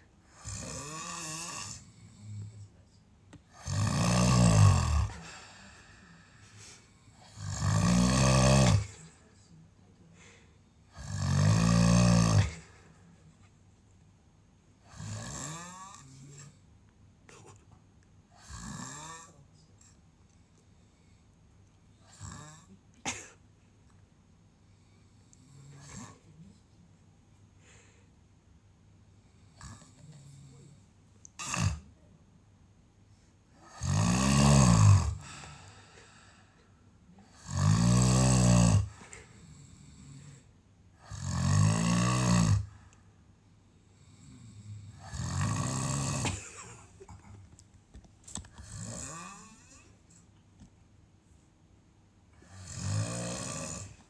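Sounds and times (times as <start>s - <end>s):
person snoring: 0.3s - 2.6s, 3.6s - 9.1s, 11.0s - 12.8s, 14.9s - 16.5s, 18.4s - 19.4s, 31.4s - 31.9s, 33.6s - 36.6s, 37.3s - 42.9s, 44.0s - 47.1s, 48.5s - 50.0s, 52.4s - 54.0s.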